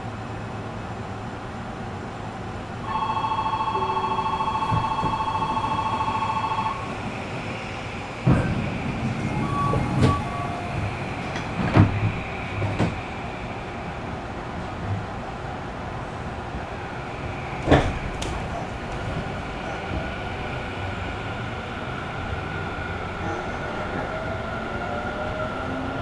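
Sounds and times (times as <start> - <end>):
train door buzzer: 2.8 - 13.3
sliding doors shutting with thump: 4.5 - 15.4, 17.2 - 21.7
door knocks and clunks: 8.3 - 13.1, 17.6 - 19.4.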